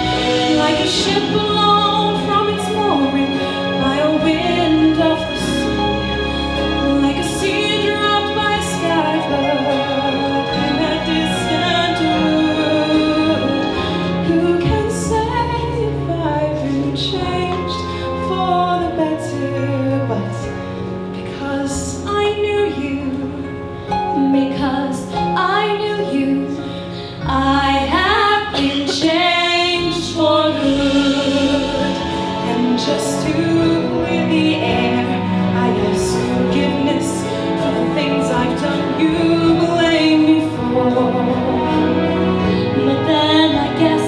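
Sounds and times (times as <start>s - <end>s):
instrumental backing: 0.0s - 44.0s.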